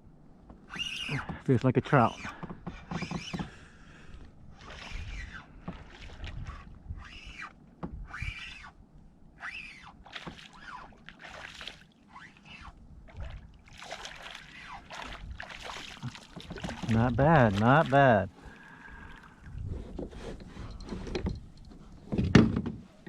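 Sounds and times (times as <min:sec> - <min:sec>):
water splashes: 0:04.5 - 0:06.7, 0:10.0 - 0:19.7.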